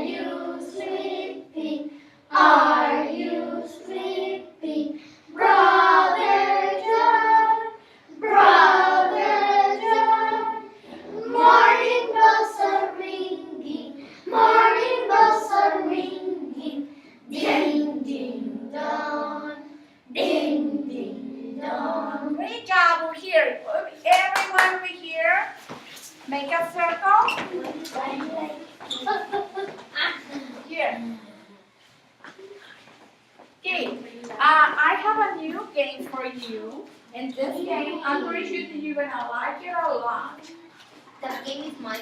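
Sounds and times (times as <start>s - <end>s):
children singing together: 0.0s - 22.4s.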